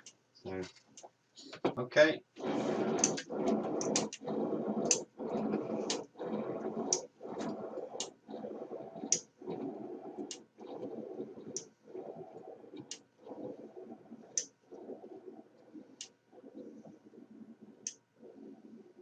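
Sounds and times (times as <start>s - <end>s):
cart rolling along track: 2.4s - 13.6s.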